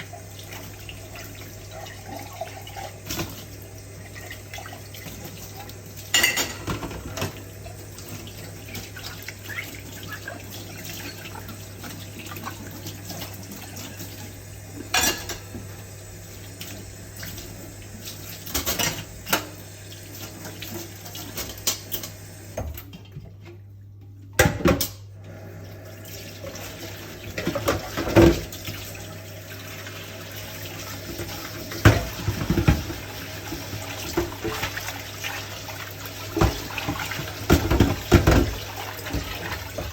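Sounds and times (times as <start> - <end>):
tap water running into sink: 0.0 - 23.6, 24.4 - 39.9
plates and cutlery clinking: 6.1 - 7.4, 14.9 - 15.5.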